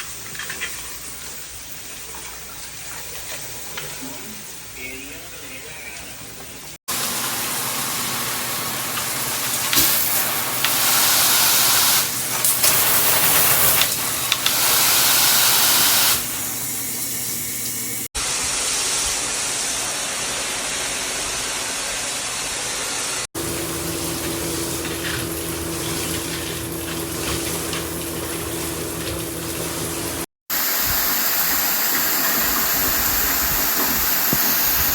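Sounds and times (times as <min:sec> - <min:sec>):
shower head spraying water: 0:06.9 - 0:18.1, 0:23.4 - 0:34.9.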